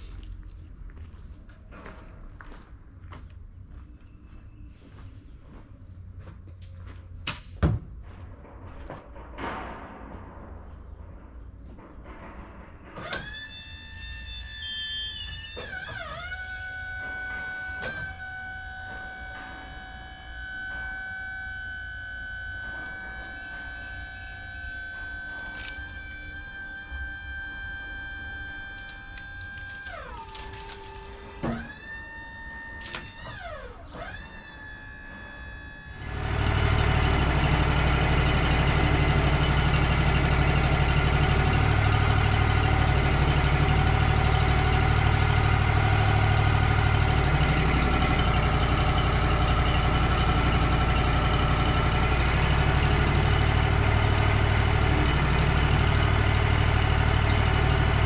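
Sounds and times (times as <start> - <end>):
sawmill engine running: 12.8 - 58.0.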